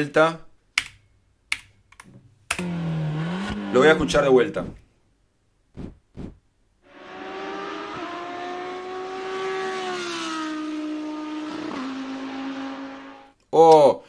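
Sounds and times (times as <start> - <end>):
race car engine revving high: 2.6 - 4.8, 5.8 - 13.3.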